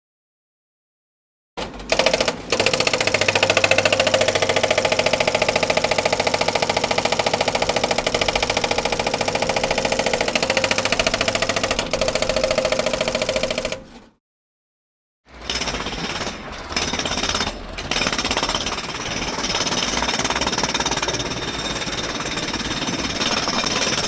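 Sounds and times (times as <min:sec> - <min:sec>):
jackhammer hammering: 0:01.6 - 0:14.0, 0:15.3 - 0:24.0.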